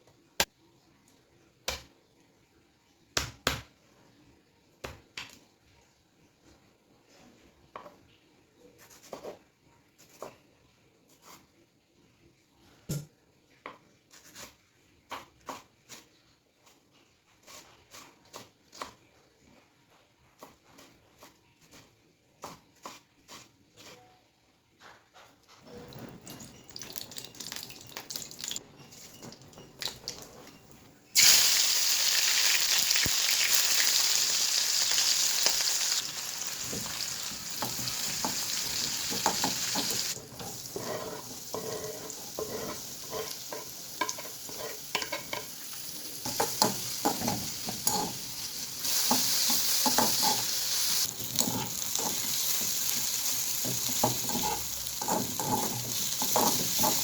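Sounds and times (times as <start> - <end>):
vegetables sizzling in oil: 31.2 - 57.0
spoon stirring and clicking on pan: 36.5 - 57.0.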